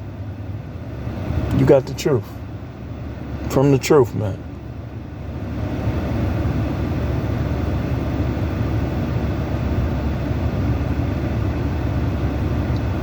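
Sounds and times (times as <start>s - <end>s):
low rumbling noise: 6.2s - 13.0s.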